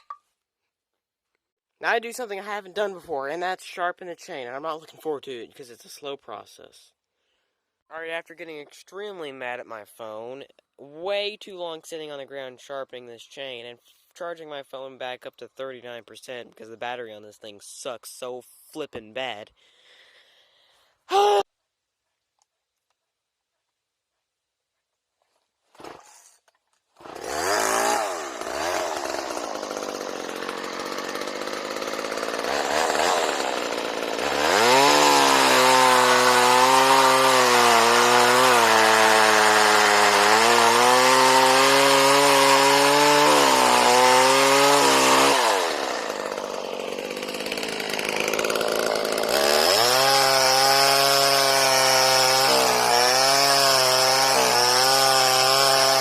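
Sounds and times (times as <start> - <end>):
chainsaw cutting wood: 25.7 - 56.0.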